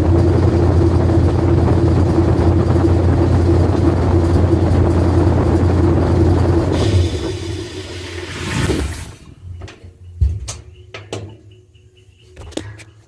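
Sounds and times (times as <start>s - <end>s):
washing machine drum spinning down: 0.0s - 10.4s.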